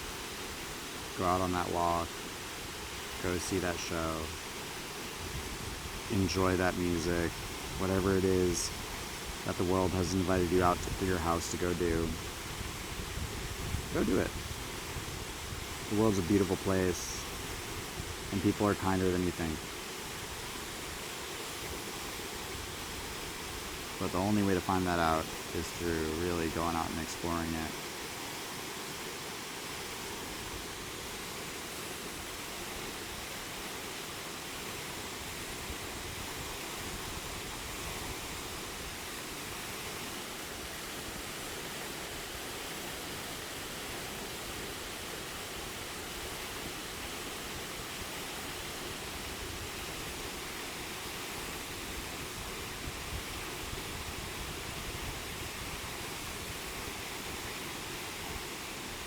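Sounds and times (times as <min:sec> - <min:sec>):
waterfall rushing: 0:00.0 - 0:59.0.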